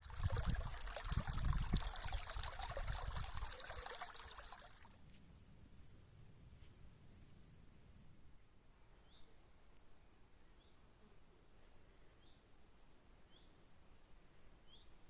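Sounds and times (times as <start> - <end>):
water trickling and splashing: 0.0 - 5.0.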